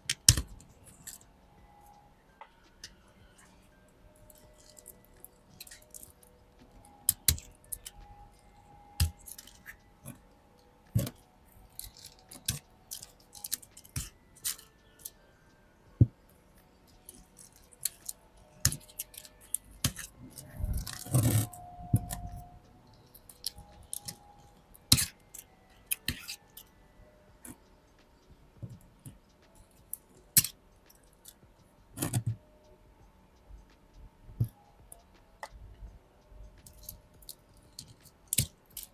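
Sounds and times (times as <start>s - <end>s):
dry leaves and pots clicking: 4.2s - 10.2s, 10.9s - 15.2s, 16.6s - 26.7s, 36.6s - 38.9s.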